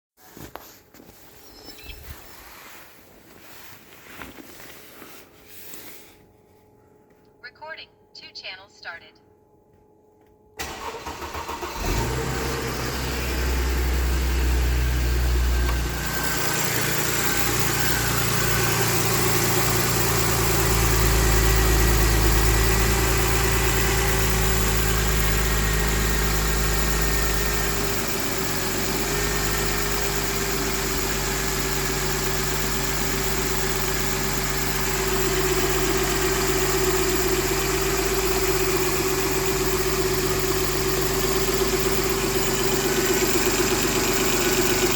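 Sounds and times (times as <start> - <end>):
car engine cranking and idling: 10.6 - 44.9.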